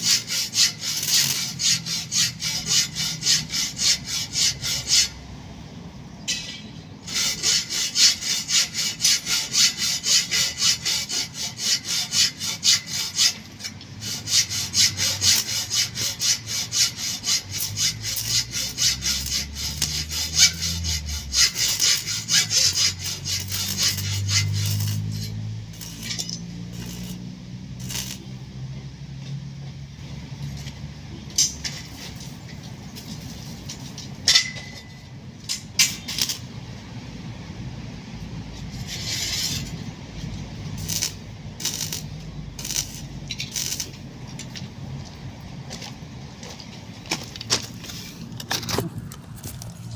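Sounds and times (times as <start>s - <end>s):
hand saw cutting wood: 0.0s - 5.2s, 7.0s - 28.3s, 38.7s - 39.8s, 40.8s - 43.9s.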